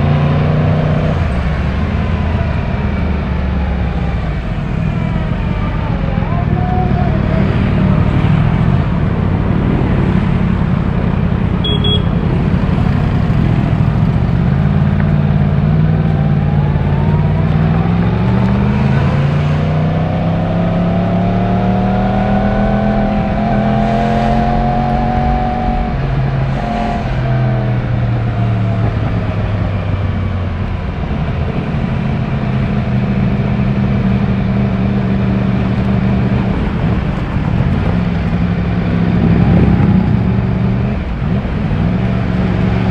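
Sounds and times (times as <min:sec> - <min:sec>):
motorcycle engine: 0:00.0 - 0:42.9
wind rush: 0:00.0 - 0:42.9.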